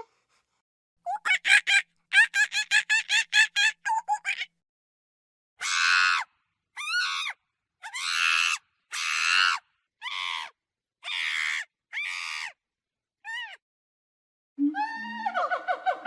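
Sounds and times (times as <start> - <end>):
monkey screeching: 1.1 - 4.5, 5.6 - 6.2, 6.8 - 12.6, 13.2 - 13.6.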